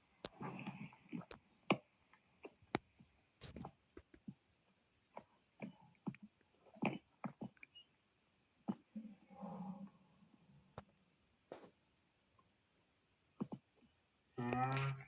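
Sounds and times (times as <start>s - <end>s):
sharp clicks and light knocks: 2.5s - 4.4s.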